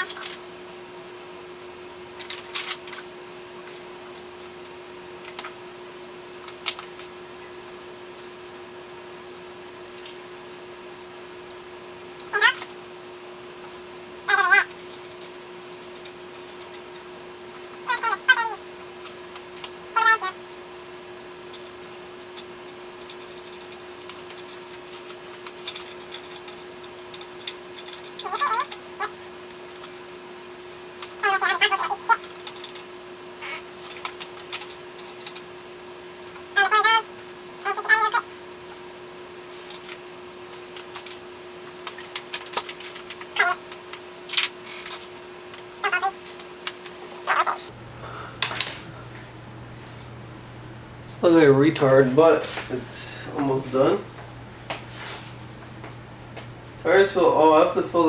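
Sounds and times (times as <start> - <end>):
steady hum: 0.0 - 58.0
bicycle parts and tools clicking: 22.4 - 29.1
cat meowing: 37.7 - 38.2, 45.8 - 46.2, 47.3 - 47.7.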